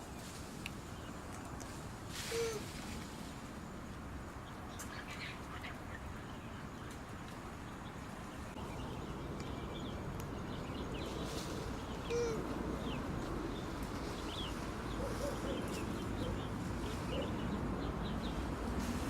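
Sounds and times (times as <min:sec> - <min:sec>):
outdoor background noise: 0:00.0 - 0:19.0
animal call: 0:02.2 - 0:02.7, 0:12.0 - 0:12.6
faint high bird chirps: 0:10.6 - 0:13.0.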